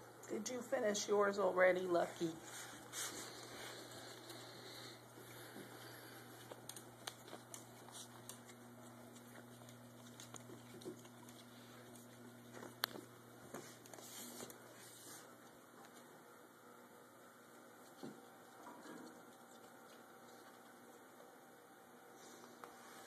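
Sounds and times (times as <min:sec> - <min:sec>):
steady low hum: 0:00.0 - 0:23.0
small dogs clicking and tapping: 0:05.4 - 0:14.6.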